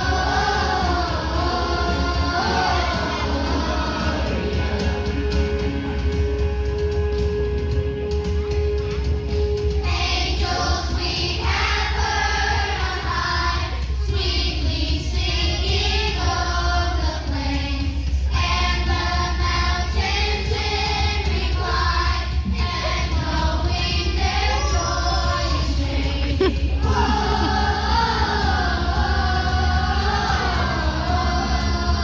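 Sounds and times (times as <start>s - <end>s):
children's choir singing: 0.0s - 6.5s, 9.7s - 32.0s.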